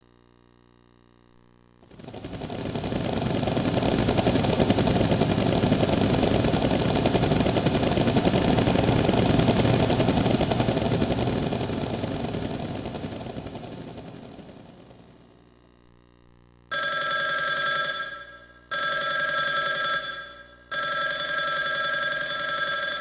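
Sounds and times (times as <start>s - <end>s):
dense fluttering synthesized noise: 1.9s - 15.4s.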